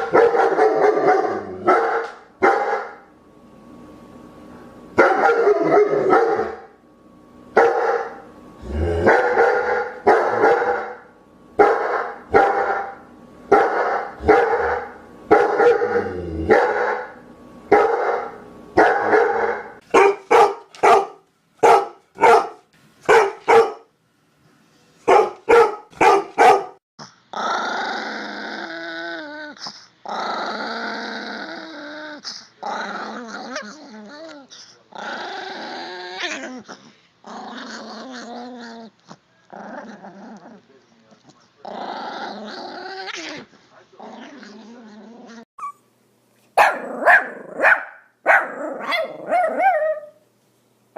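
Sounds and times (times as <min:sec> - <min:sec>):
dog barking: 0:00.0 - 0:03.0, 0:05.0 - 0:06.7, 0:07.6 - 0:08.2, 0:09.1 - 0:11.0, 0:11.6 - 0:15.9, 0:16.5 - 0:23.9, 0:25.1 - 0:26.8, 0:46.6 - 0:50.2
dog growling: 0:00.7 - 0:01.7, 0:08.6 - 0:09.4, 0:15.6 - 0:16.7, 0:27.0 - 0:45.5, 0:46.7 - 0:50.1.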